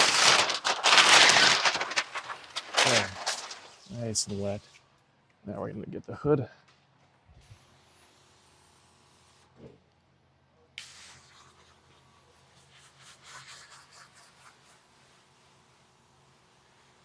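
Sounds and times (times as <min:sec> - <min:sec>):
rubbing and rustling handling noise: 0:00.0 - 0:04.6.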